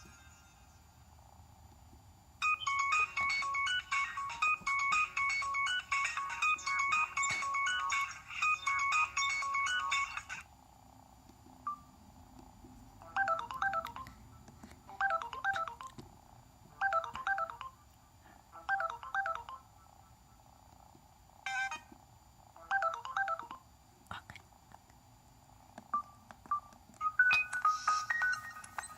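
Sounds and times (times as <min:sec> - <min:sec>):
melodic phone ringtone: 0:02.4 - 0:10.4, 0:13.0 - 0:14.1, 0:14.9 - 0:15.9, 0:16.8 - 0:17.8, 0:18.6 - 0:19.8, 0:21.5 - 0:21.8, 0:22.6 - 0:23.6, 0:27.0 - 0:28.9
warbling chirp ringtone: 0:02.4 - 0:10.4, 0:13.0 - 0:15.9, 0:16.8 - 0:17.8, 0:18.6 - 0:20.2, 0:21.5 - 0:21.9, 0:22.6 - 0:23.6, 0:27.1 - 0:28.9.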